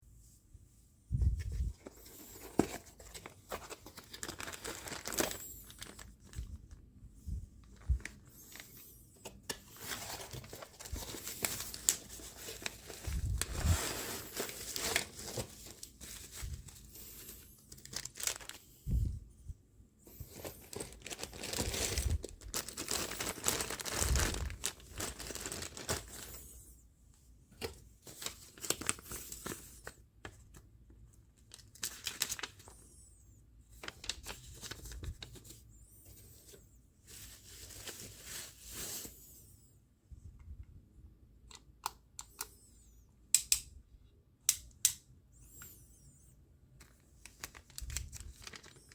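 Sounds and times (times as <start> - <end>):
packaging crinkling and tearing: 1.8 - 6.5, 7.7 - 19.0, 20.1 - 26.5, 31.5 - 32.8, 46.8 - 48.9.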